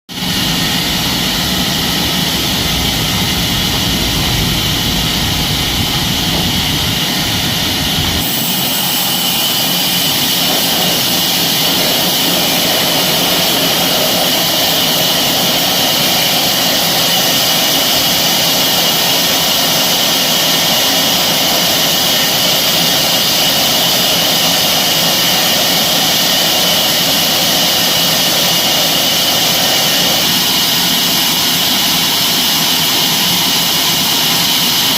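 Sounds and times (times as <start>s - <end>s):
band saw cutting timber: 0.1s - 34.9s.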